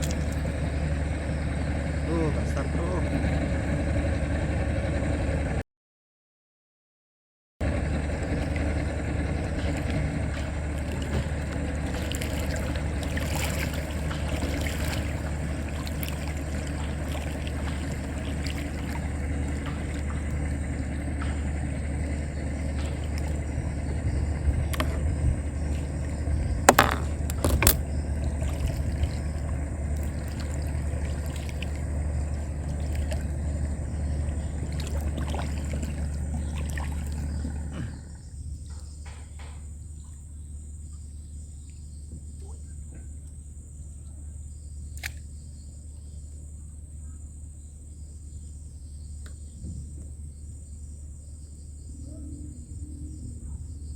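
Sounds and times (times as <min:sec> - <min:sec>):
boat motor running: 0:00.0 - 0:05.6, 0:07.6 - 0:53.9
sharp knocks: 0:26.7 - 0:27.8.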